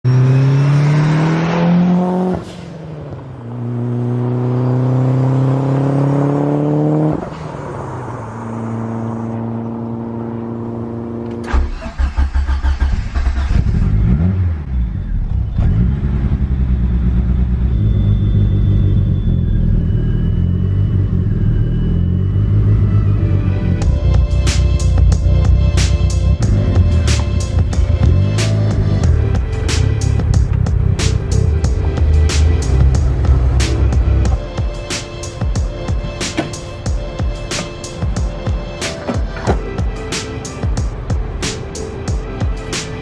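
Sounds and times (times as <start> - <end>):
car engine accelerating through gears: 0.0 - 40.1
low uneven engine rumble: 13.4 - 43.0.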